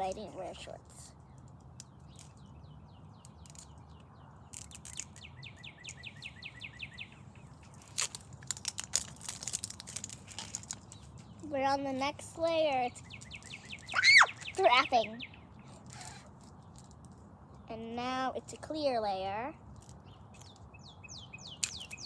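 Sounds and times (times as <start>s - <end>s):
plastic wrapping crinkling: 7.6s - 11.4s
small bird trilling: 12.9s - 16.3s.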